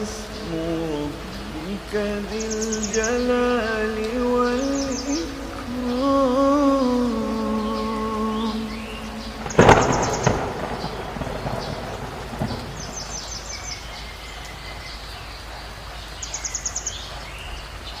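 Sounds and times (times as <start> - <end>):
rain falling: 0.0 - 18.0
thunderclap rumbling: 5.1 - 14.8.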